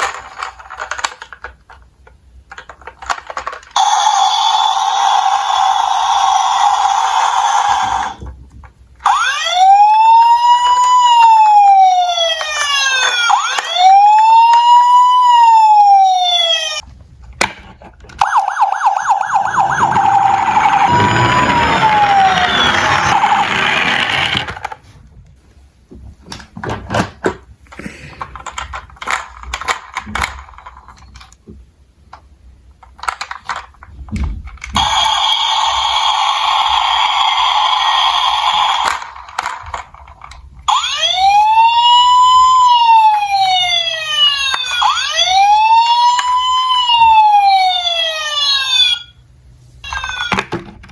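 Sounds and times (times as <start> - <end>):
siren wailing: 9.0 - 16.8, 18.2 - 24.4, 40.7 - 49.2
fast pulsing siren: 9.1 - 16.8, 18.2 - 23.7, 40.7 - 49.1
rattling noise: 19.2 - 24.8.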